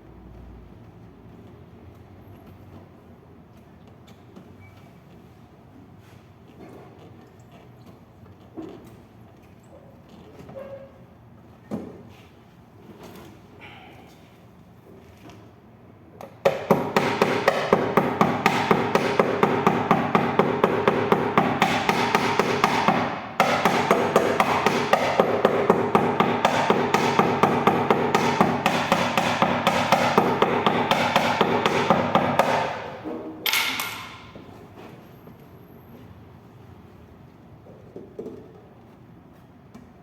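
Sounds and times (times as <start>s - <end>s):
hammer tapping on metal: 16.4s - 34.4s.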